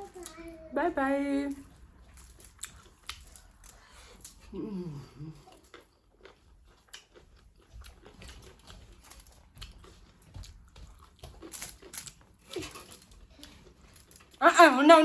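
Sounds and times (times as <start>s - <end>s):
chewing and mouth smacks: 1.7s - 4.5s, 5.3s - 14.4s.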